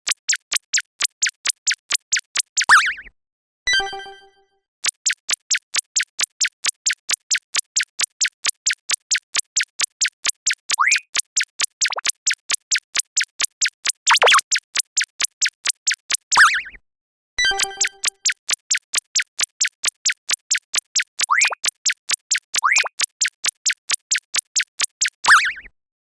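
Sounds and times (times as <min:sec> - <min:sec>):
rapid even ticking: 0:00.0 - 0:02.7, 0:04.8 - 0:16.4, 0:17.6 - 0:25.4.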